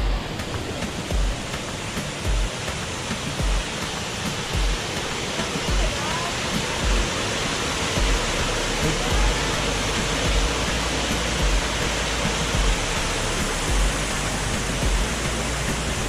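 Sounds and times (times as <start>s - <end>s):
background music with low beat: 0.0s - 16.0s
waterfall rushing: 0.0s - 16.0s.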